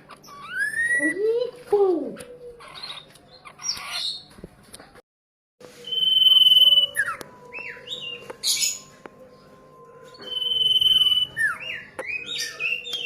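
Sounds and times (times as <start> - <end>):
bird singing whistled notes: 0.2 - 1.4, 5.7 - 13.0.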